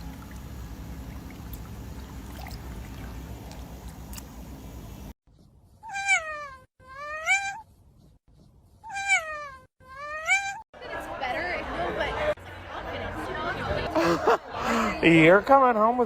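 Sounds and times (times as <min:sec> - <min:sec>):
cat meowing: 0:05.8 - 0:07.6, 0:08.8 - 0:10.6.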